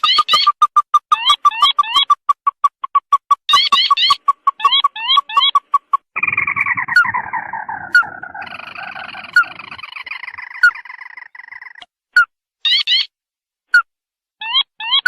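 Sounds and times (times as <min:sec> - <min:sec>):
crake call: 0:03.5 - 0:11.8.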